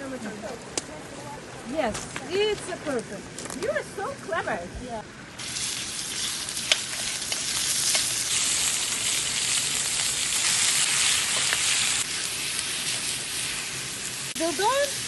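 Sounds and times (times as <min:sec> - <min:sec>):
meat sizzling over coals: 0:05.4 - 0:15.0.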